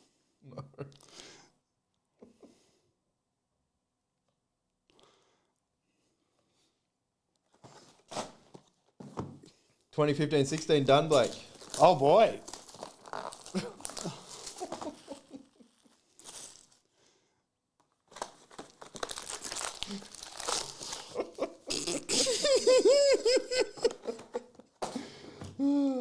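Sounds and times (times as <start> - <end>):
plastic wrappers crinkling and tearing: 10.4 - 16.9, 17.8 - 24.4
person laughing: 13.4 - 15.8, 19.9 - 24.6.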